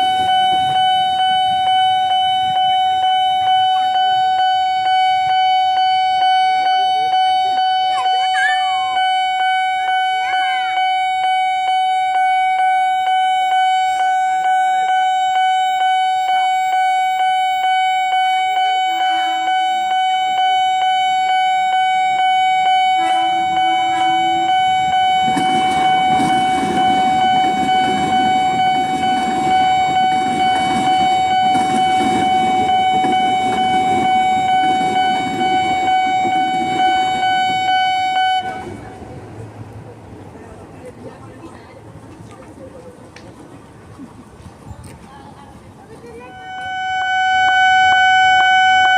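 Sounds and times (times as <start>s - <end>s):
level crossing alarm tone pulsing: 0.0s - 38.8s
train rumbling past: 18.6s - 48.9s.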